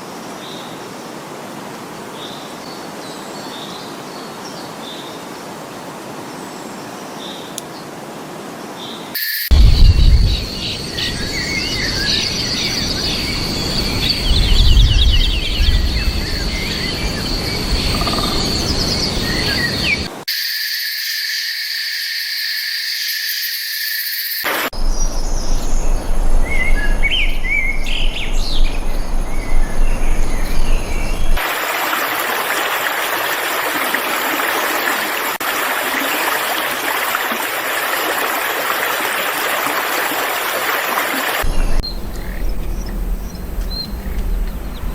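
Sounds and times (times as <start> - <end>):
birds calling and singing: 8.8 - 20.2, 24.3 - 31.4, 41.3 - 44.9
chirping calls: 9.2 - 20.2, 41.4 - 44.9
background hiss: 41.5 - 44.9.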